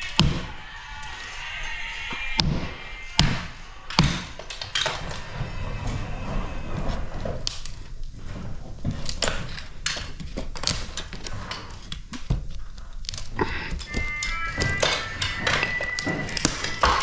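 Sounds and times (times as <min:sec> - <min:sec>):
demolition knocks and thuds: 0:13.4 - 0:17.0.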